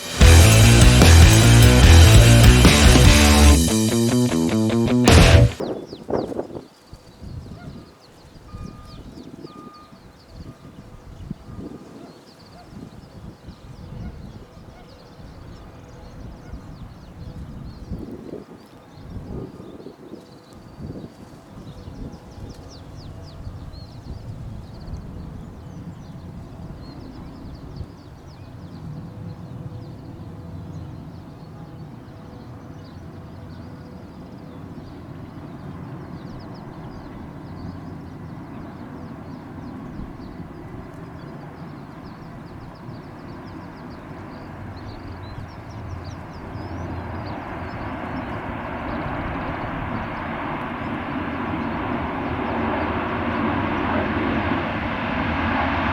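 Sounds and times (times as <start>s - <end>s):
aircraft engines approaching: 0.0s - 5.6s, 34.1s - 55.9s.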